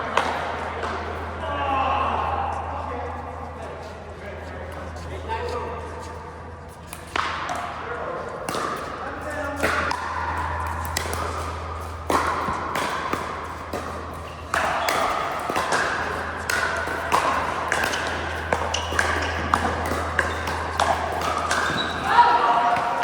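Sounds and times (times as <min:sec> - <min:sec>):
steady low hum: 0:00.0 - 0:23.0
ball bouncing on court: 0:08.4 - 0:23.0
paddles striking plastic ball: 0:10.7 - 0:23.0.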